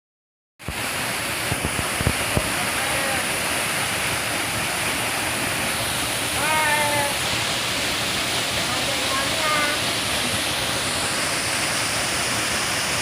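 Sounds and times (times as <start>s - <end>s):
flowing river water: 0.6s - 13.0s
person's voice: 6.4s - 7.2s, 8.7s - 10.4s.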